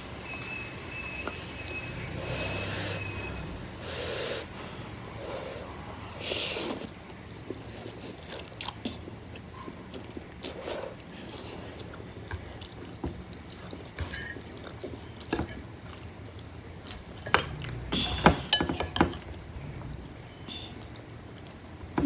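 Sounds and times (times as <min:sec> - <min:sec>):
person chewing noodles: 0:06.2 - 0:21.8.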